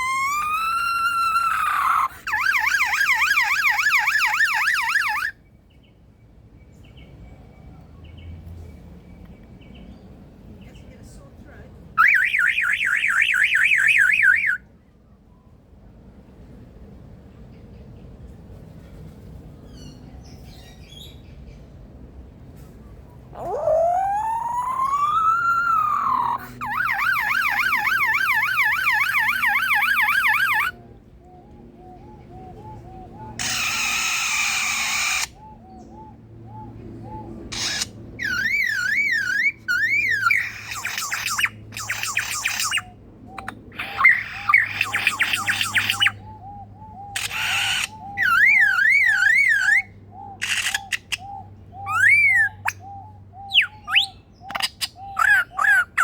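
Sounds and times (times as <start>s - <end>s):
lyrebird mimicking car alarm: 1.6s - 5.3s, 12.0s - 14.6s, 23.4s - 30.8s, 33.1s - 35.4s, 37.5s - 42.8s, 47.1s - 52.8s, 53.5s - 56.0s.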